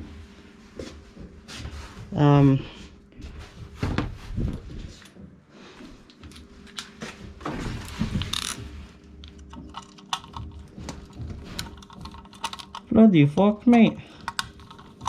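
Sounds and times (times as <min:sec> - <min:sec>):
screwdriver clicking and scraping: 0:08.2 - 0:08.6, 0:09.2 - 0:12.9, 0:13.8 - 0:15.0.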